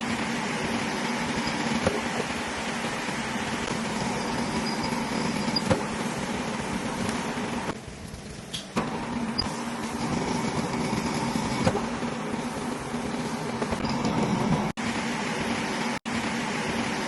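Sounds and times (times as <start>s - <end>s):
machine humming: 0.0s - 7.8s.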